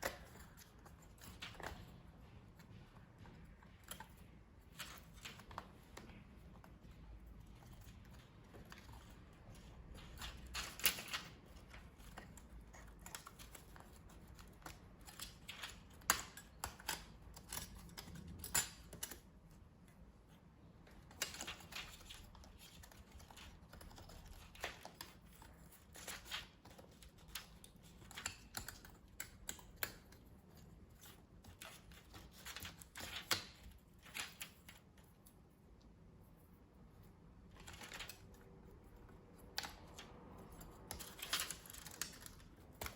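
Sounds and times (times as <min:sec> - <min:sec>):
tools clicking and tapping: 0:00.0 - 0:19.6, 0:20.9 - 0:35.2.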